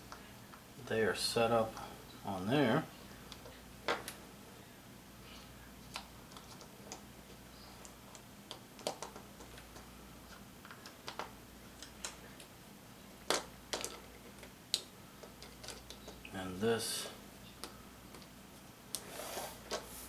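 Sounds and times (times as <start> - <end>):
plastic parts clicking and tapping: 7.8 - 12.2, 13.2 - 16.2.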